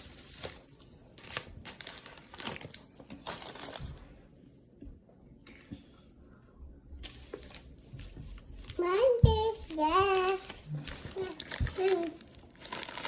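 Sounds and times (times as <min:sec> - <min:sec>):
plastic wrapper crinkling: 0:01.2 - 0:04.0, 0:10.1 - 0:13.0.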